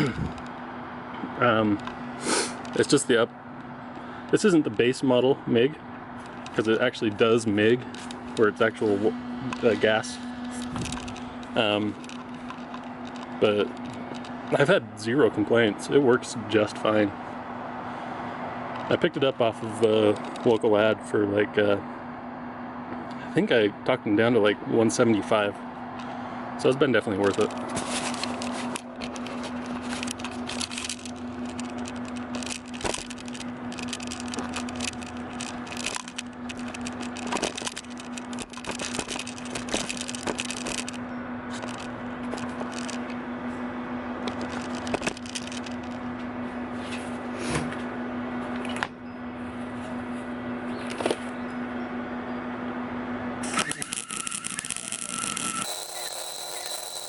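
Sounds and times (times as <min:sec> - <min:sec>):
welding arc crackling: 0:53.8 - 0:57.0
welder humming: 0:55.4 - 0:57.0.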